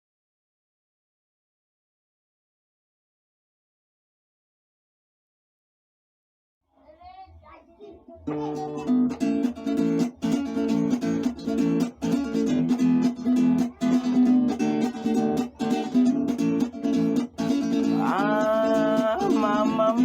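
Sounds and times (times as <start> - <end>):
acoustic guitar strumming: 8.2 - 20.0
person singing: 13.3 - 20.0.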